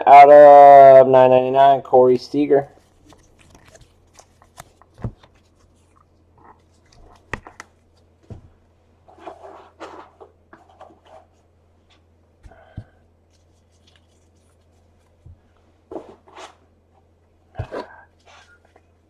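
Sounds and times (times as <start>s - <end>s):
trading cards rustling: 2.8s - 8.1s.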